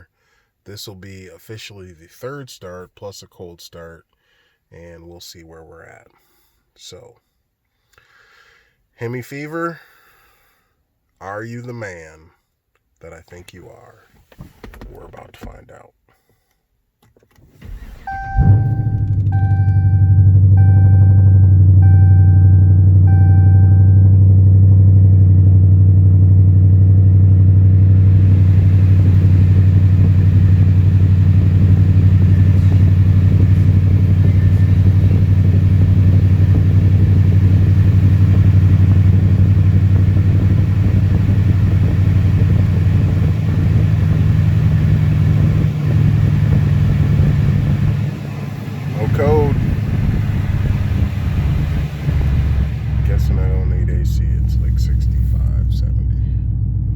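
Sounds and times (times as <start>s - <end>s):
car engine idling: 17.7s - 56.9s
dashboard warning chime: 18.0s - 24.2s.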